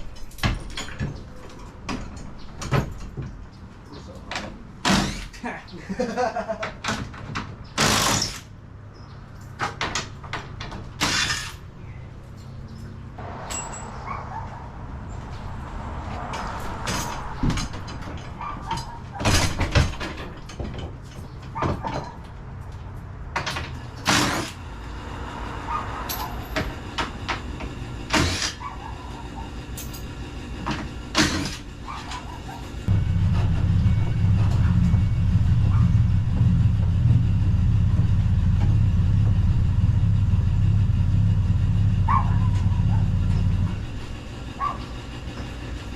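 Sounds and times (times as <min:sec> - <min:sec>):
sharp knocks and clanks: 0:00.0 - 0:05.3, 0:13.2 - 0:24.6, 0:32.9 - 0:39.9
steady low hum: 0:32.7 - 0:45.9.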